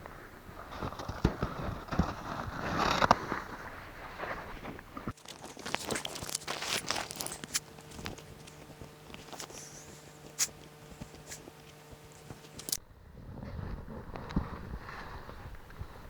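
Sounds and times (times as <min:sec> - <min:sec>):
faint steady hum: 0:00.0 - 0:16.0
snow and gear crunching: 0:00.2 - 0:12.8.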